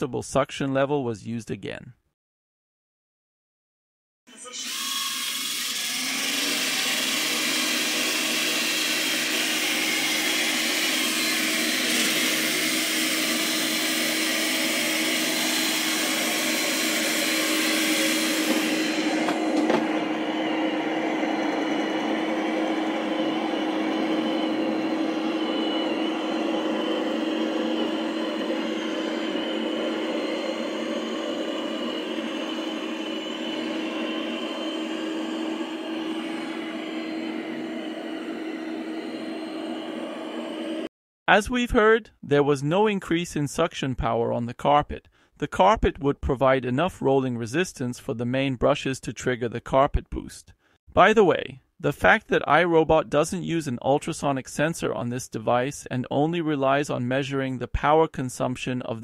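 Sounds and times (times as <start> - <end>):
robot vacuum motor: 4.3 - 40.9.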